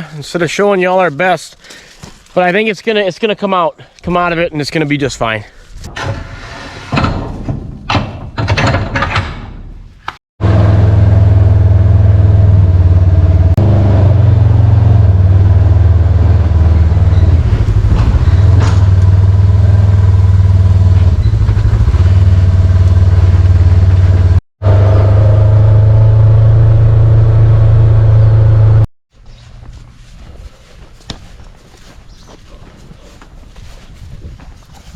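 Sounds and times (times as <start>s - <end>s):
engine running with low hum: 10.4s - 31.0s.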